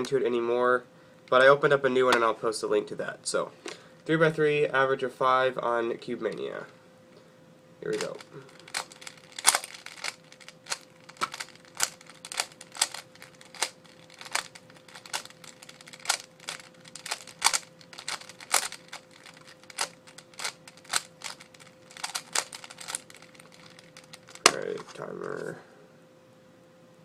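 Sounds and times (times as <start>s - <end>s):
faint steady hum: 0.0s - 27.0s
puzzle cube plastic clicks: 7.9s - 24.7s.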